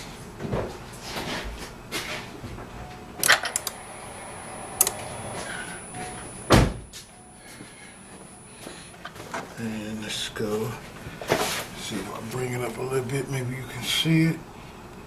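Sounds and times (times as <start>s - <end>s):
thump: 6.5s - 6.9s.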